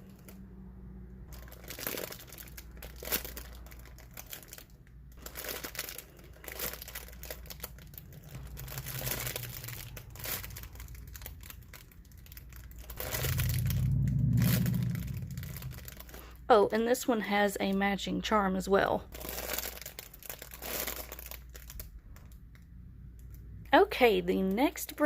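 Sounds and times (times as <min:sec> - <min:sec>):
plastic packaging crinkling: 0:01.3 - 0:16.4, 0:19.0 - 0:22.6
low hum: 0:06.2 - 0:17.0.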